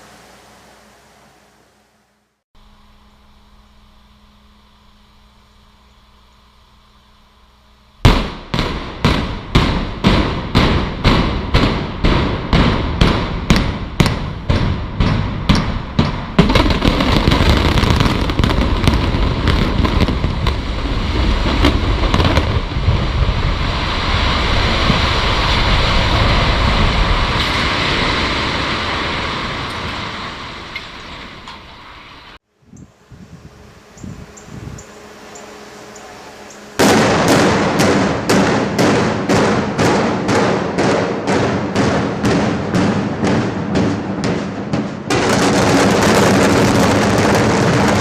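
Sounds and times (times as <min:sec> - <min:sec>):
explosive charges going off: 0:08.0 - 0:31.5, 0:36.7 - 0:48.0
rumble and crash of building collapsing: 0:16.0 - 0:31.5.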